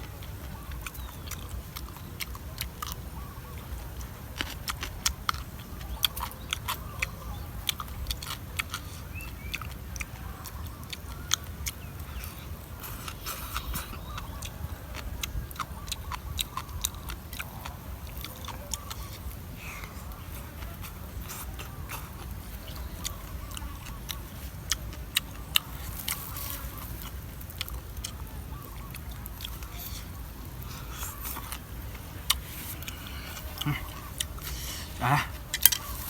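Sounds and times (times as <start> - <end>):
chewing and crunching: 0.0 - 36.0
wet mouth clicks: 4.0 - 28.2, 28.9 - 36.0.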